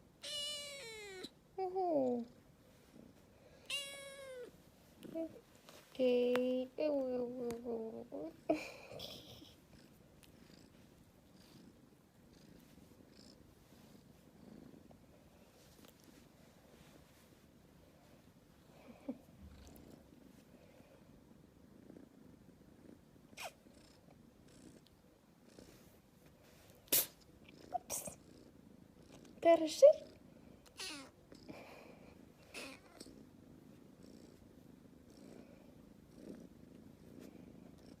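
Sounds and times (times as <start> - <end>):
kitten purring: 0.0 - 38.0
kitten meowing: 0.2 - 1.3, 3.7 - 4.5.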